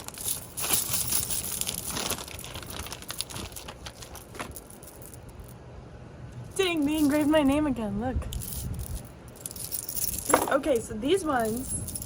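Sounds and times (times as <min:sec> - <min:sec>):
packaging rustling and crinkling: 0:00.0 - 0:05.2.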